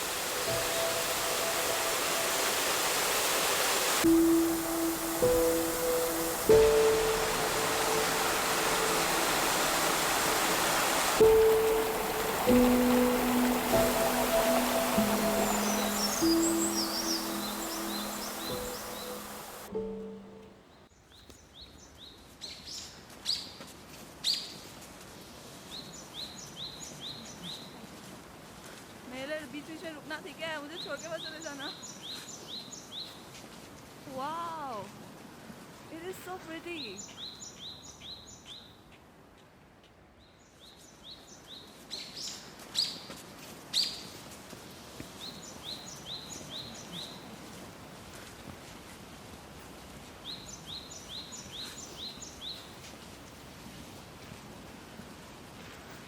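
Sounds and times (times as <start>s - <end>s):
songbird chirping: 0.0s - 22.1s
faint outdoor background: 0.0s - 23.1s, 28.7s - 48.8s.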